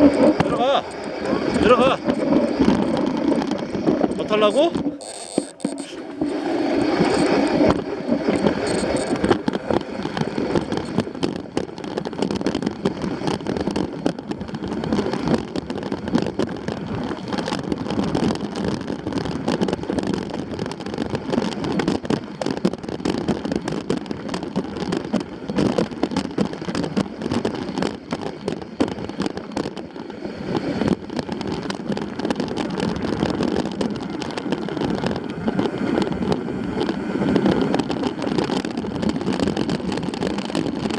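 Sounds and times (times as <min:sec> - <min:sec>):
rattle of small knocks and clicks: 0:00.0 - 0:29.9
wind buffeting microphone: 0:00.0 - 0:40.9.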